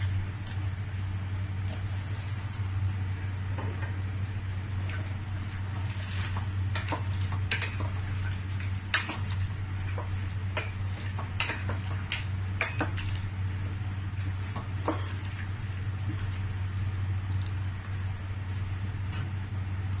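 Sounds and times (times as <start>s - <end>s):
steady low hum: 0.0s - 20.0s
spoon stirring in a pot: 4.8s - 16.8s.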